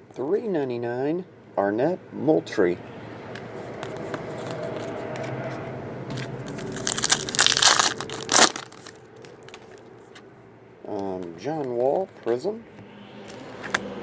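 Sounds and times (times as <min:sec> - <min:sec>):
card pack wrapper tearing and crinkling: 0:06.4 - 0:09.8.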